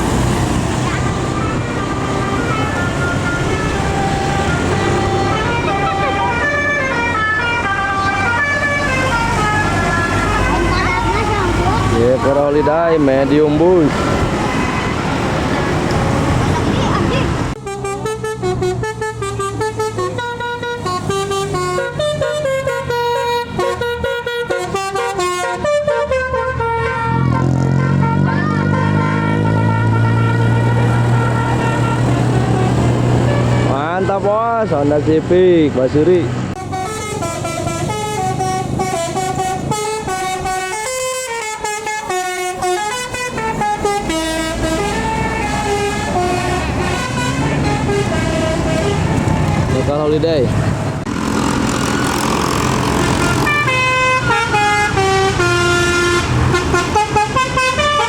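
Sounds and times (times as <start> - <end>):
vehicle engine rumble: 0.0 - 58.0
multi-tone horn playing a tune: 1.6 - 12.6, 17.6 - 33.9, 36.6 - 49.7, 53.2 - 58.0.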